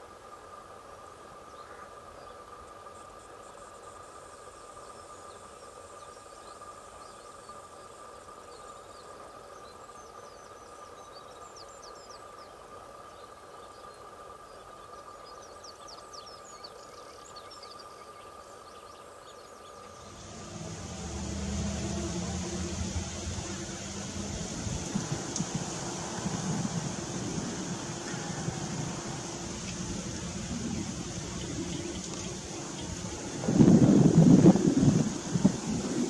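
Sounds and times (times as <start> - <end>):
background hiss: 0.0 - 36.0
rushing noise with low drone: 19.9 - 36.0
steady high whine: 19.9 - 36.0.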